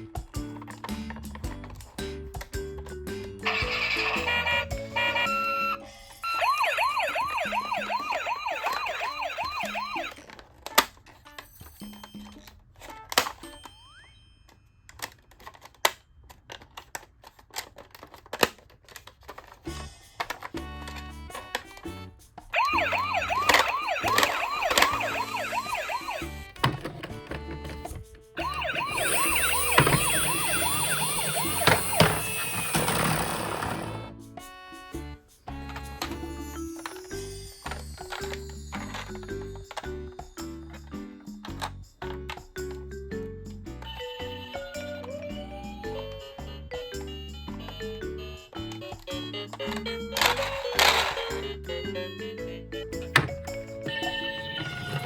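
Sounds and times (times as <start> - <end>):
toy siren yelping: 3.4 - 10.3, 22.6 - 26.8, 28.4 - 34.1, 43.9 - 55.0
toy knocks: 22.7 - 34.1, 53.0 - 55.0
buzzy electronic tones: 28.4 - 34.1.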